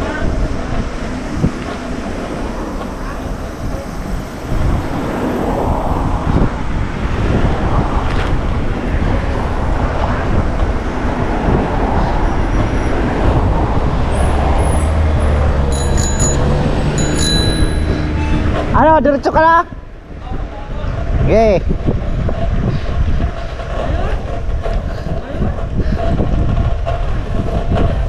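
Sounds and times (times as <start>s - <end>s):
road traffic rumble: 0.0s - 28.0s
wind buffeting microphone: 0.0s - 28.0s
thin high-pitched tones: 15.7s - 18.4s.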